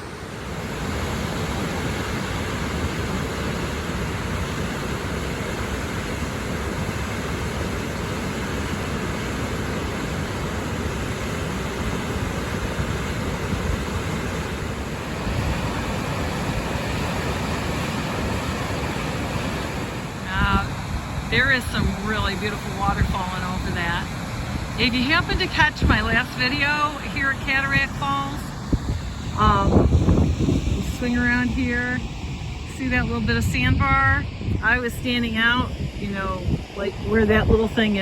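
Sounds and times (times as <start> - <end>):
waterfall rushing: 0.0 - 30.2.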